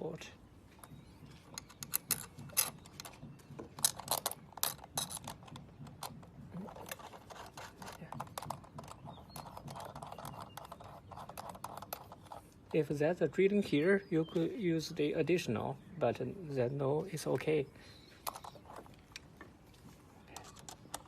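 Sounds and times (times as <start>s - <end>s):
metal parts clicking and scraping: 1.3s - 12.5s, 18.1s - 19.4s, 20.2s - 21.0s.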